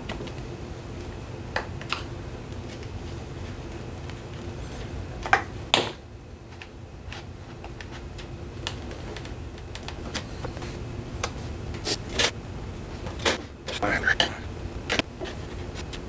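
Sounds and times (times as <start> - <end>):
low steady hum: 9.7 - 16.0.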